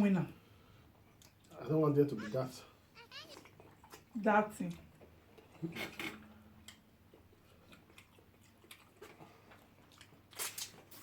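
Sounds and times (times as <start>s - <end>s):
chewing clicks and smacks: 1.1s - 1.6s, 6.7s - 11.0s.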